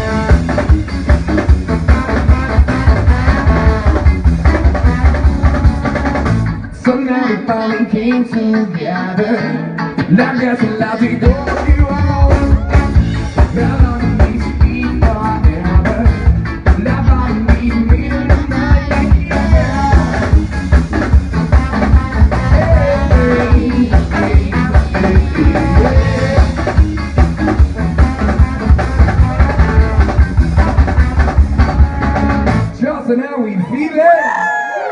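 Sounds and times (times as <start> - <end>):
drum kit beat: 0.0 - 32.8
guitar: 0.0 - 34.9
person singing: 6.8 - 20.4, 21.8 - 26.8.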